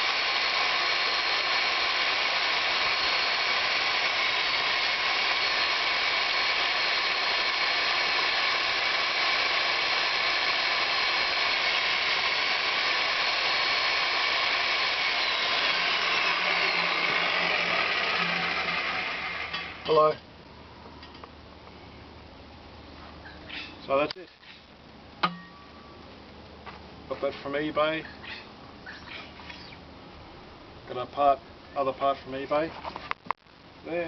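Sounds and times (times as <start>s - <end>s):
electric drill grinding into stone: 0.0s - 20.0s.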